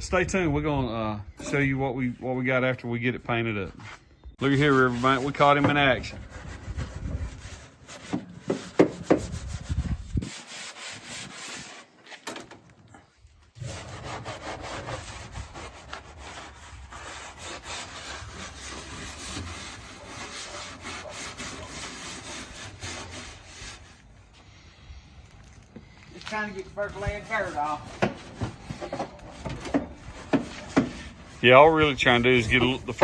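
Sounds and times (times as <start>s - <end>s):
scrubbing and rubbing: 3.8s - 12.2s, 13.5s - 24.1s, 26.3s - 33.0s.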